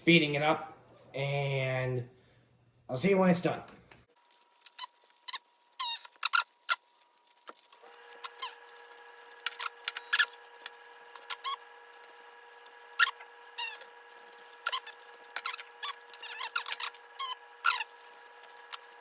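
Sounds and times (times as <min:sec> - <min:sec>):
squeaky chirps: 0:04.6 - 0:07.0, 0:08.0 - 0:08.8, 0:09.4 - 0:10.5, 0:11.1 - 0:11.8, 0:12.8 - 0:19.0
steady high hum: 0:07.6 - 0:19.0.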